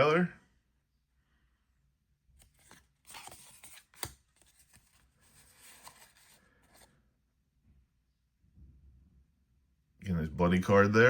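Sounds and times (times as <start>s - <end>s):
picture cards rustling: 2.3s - 6.9s.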